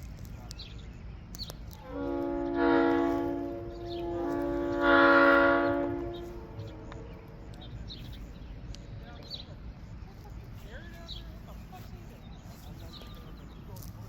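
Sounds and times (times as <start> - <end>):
locomotive air horn chord: 1.8 - 7.6.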